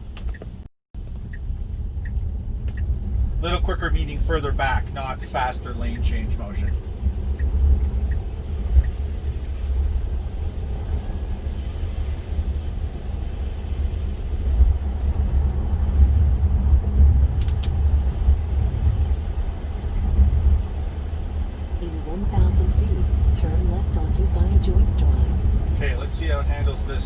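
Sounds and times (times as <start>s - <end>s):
tyre noise on wet road: 0.0s - 27.0s.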